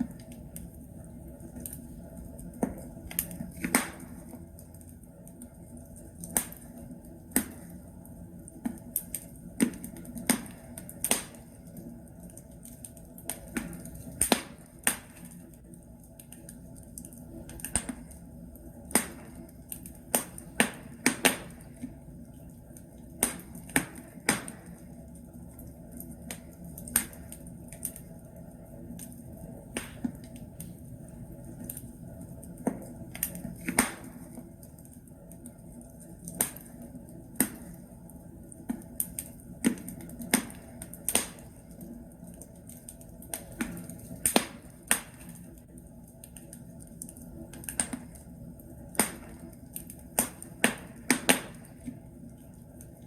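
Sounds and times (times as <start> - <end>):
logs crackling and popping: 0.0 - 53.0
low rumble of fire: 0.0 - 53.0.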